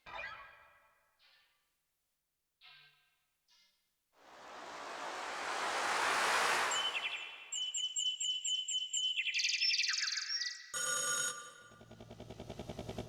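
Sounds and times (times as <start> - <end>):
synthesizer noise swell: 4.3 - 7.7
telephone-like ring: 10.8 - 11.7.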